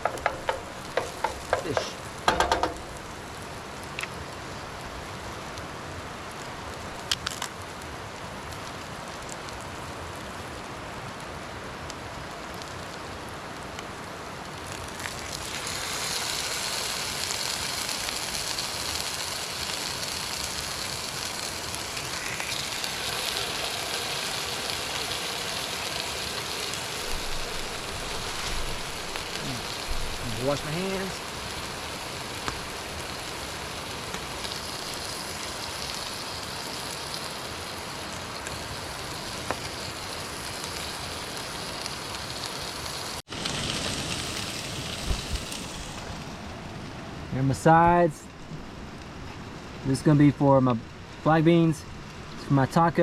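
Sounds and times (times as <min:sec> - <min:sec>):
food sizzling in a frying pan: 0:00.0 - 0:04.8, 0:14.6 - 0:46.3.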